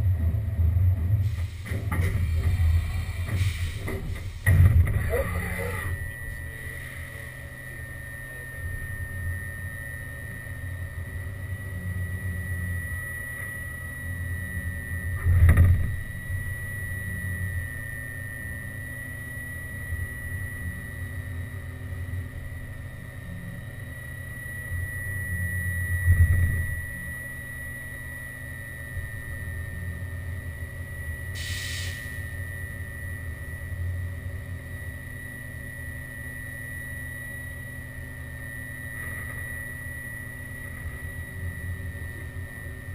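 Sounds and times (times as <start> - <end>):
machine low surges: 0.0 - 42.9
milling machine whine and hum: 0.0 - 42.9
brief hiss: 31.4 - 32.2.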